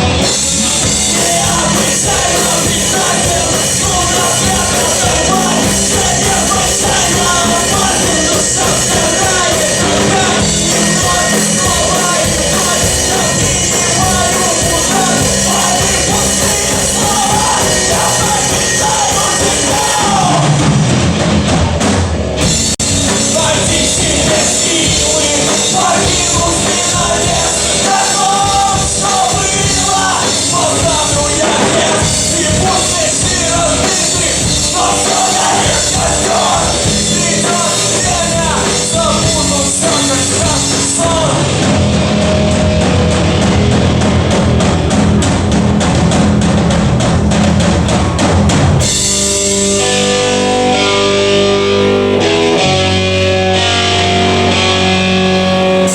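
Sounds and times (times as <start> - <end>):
rock band playing loudly: 0.0 - 55.9
person singing: 0.2 - 20.6, 23.0 - 41.6.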